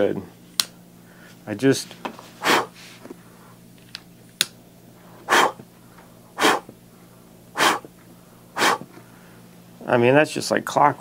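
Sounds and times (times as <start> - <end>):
loud puffs of air: 2.4 - 2.9, 5.2 - 5.6, 6.4 - 6.7, 7.5 - 7.9, 8.5 - 8.9.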